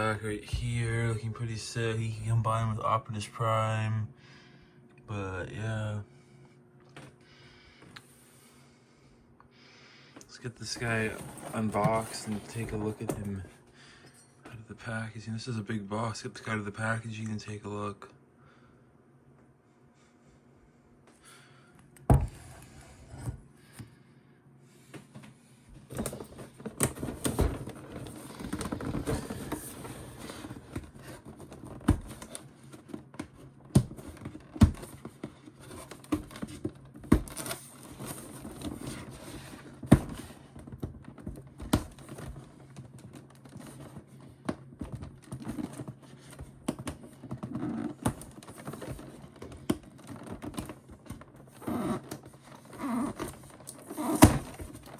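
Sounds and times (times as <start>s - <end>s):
packaging scraping and rustling: 10.7s - 13.4s, 25.9s - 54.9s.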